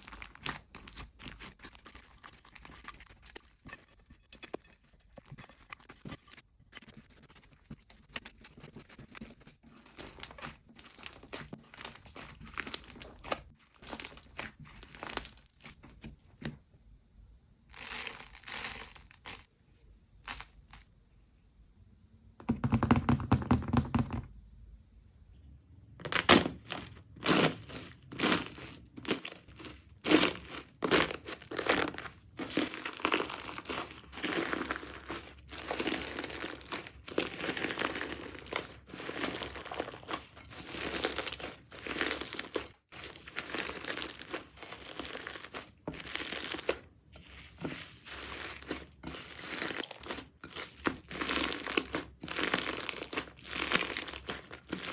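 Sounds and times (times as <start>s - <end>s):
slime squish: 0.0s - 16.5s, 26.1s - 54.9s.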